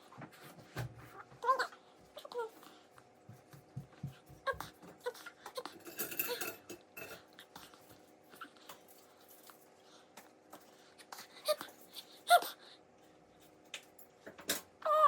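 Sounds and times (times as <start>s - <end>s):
utensils clinking against dishes: 5.5s - 7.8s.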